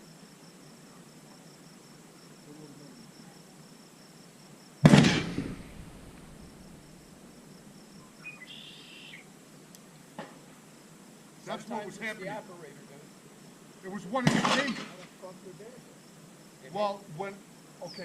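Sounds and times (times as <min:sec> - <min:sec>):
insects chirping: 0:00.0 - 0:18.0
gunshot: 0:04.8 - 0:06.4, 0:14.2 - 0:15.1.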